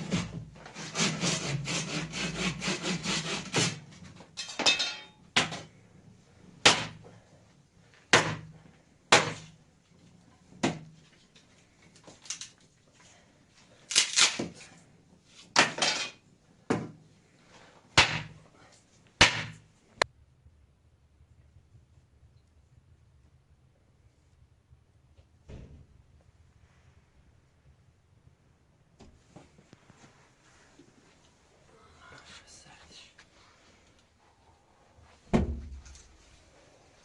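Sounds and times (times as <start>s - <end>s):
hand saw cutting wood: 0.0s - 4.0s.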